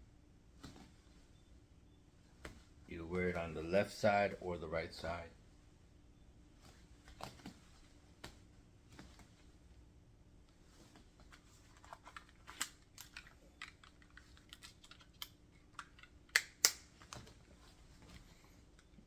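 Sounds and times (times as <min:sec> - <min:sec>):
leather pouch clicks and rubbing: 0:10.8 - 0:17.4.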